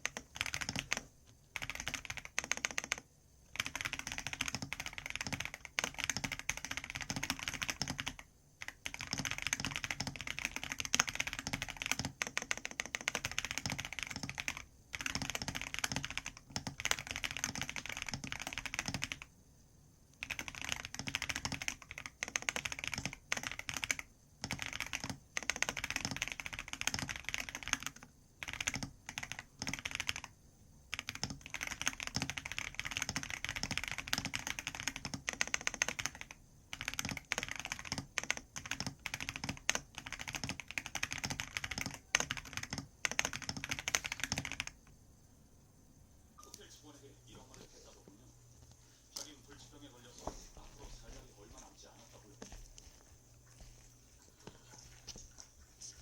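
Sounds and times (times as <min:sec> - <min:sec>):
fast typing on keyboard: 0:00.0 - 0:19.3, 0:20.2 - 0:44.9.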